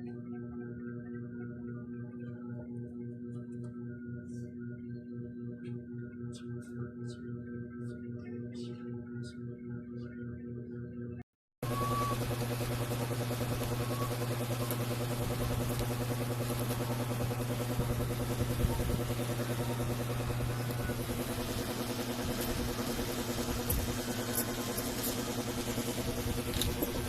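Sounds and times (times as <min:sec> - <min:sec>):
ceiling fan motor hum: 0:11.6 - 0:27.0
fan blades whirring: 0:11.6 - 0:27.0.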